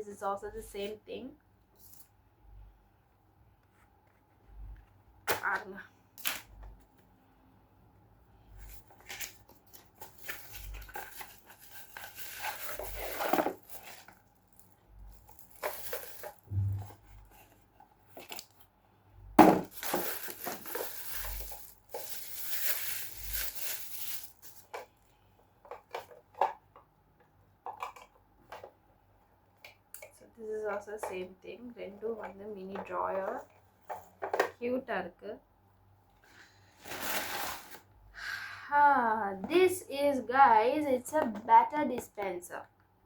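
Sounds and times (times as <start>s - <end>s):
plastic packaging crinkling and tearing: 8.6s - 16.9s, 19.6s - 24.7s.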